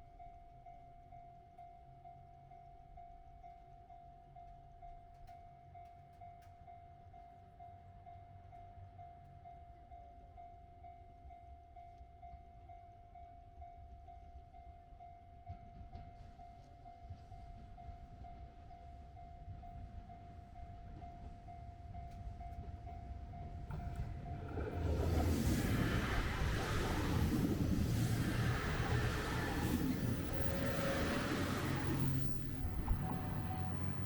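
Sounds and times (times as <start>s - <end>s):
diesel train rumble: 23.3s - 34.0s.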